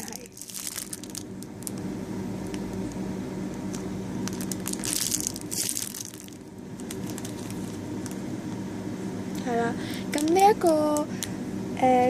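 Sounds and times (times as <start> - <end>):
foam squishy being squeezed: 0.0 - 1.8, 3.6 - 8.2
plastic crinkling: 0.0 - 1.9, 3.6 - 8.2, 10.1 - 11.1
steady low hum: 0.0 - 12.0.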